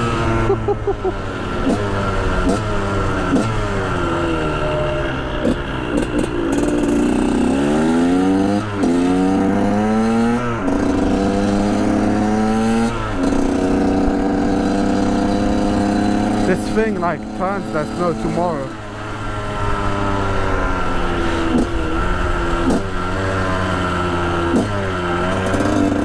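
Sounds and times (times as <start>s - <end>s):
two-stroke engine revving: 0.0s - 26.0s.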